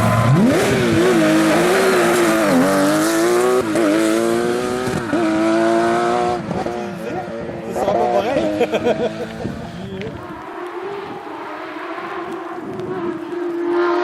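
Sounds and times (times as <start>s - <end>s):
rally car engine revving: 0.0s - 14.0s.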